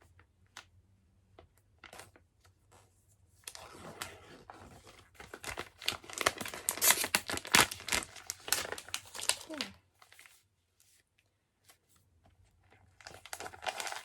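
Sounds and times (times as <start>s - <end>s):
packaging crinkling and tearing: 3.5s - 10.3s, 13.0s - 14.0s.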